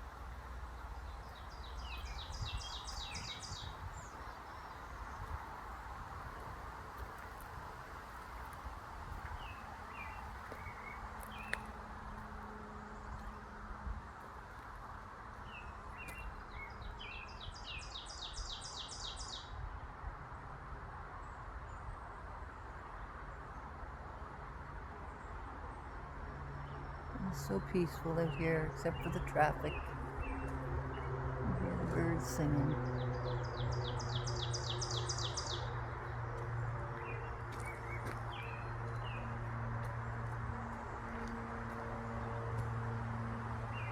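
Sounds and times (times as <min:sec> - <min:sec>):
songbird singing: 0:00.0 - 0:07.4, 0:09.2 - 0:11.8, 0:15.4 - 0:19.6, 0:26.6 - 0:43.9
distant traffic hum: 0:00.0 - 0:43.9.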